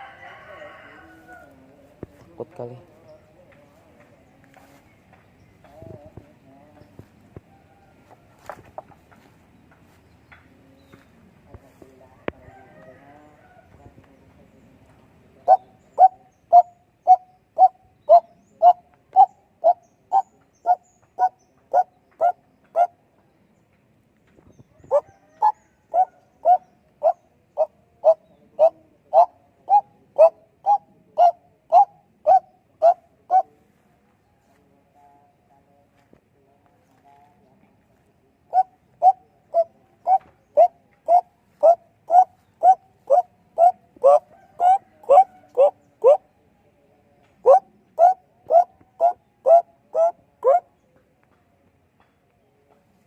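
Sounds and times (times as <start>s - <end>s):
night bird calling: 15.4s - 23.0s, 24.8s - 33.6s, 38.5s - 46.3s, 47.4s - 50.7s.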